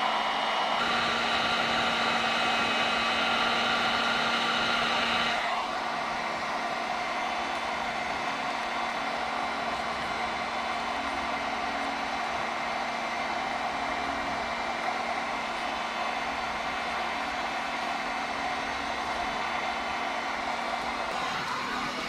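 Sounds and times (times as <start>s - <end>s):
heat gun blowing: 0.0s - 7.2s, 21.1s - 22.0s.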